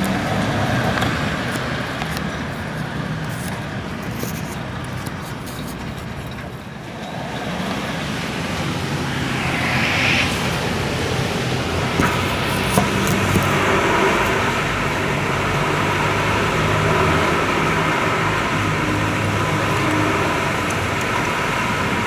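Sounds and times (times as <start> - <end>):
road traffic rumble: 0.0 - 22.0
low hum: 6.9 - 11.9.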